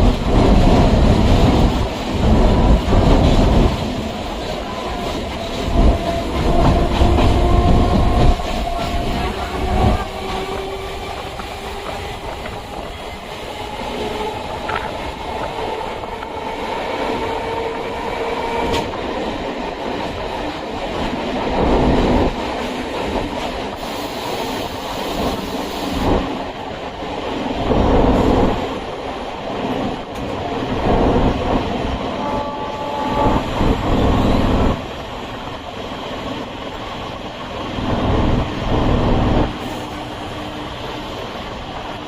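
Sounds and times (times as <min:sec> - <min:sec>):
train wheels rumbling on rail: 0:00.0 - 0:42.0.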